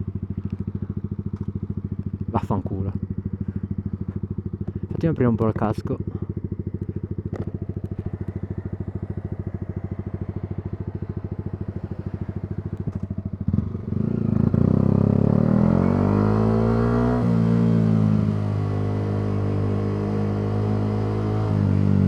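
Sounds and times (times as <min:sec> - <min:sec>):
motorcycle engine idling: 0:00.0 - 0:15.3
motorcycle engine revving: 0:00.0 - 0:22.0.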